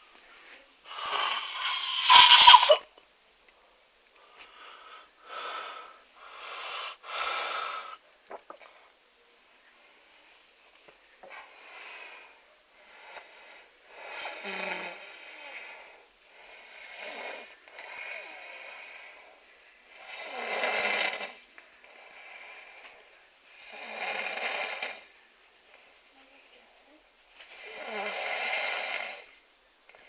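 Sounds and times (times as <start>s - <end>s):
quiet breathing: 0.0s - 2.8s, 3.5s - 28.0s
person snoring: 0.9s - 2.8s.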